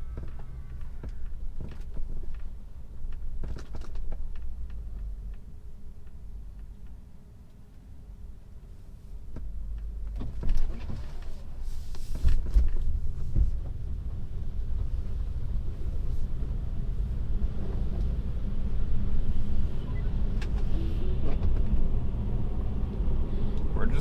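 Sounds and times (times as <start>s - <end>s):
tyres rumbling on snow: 10.0s - 24.0s.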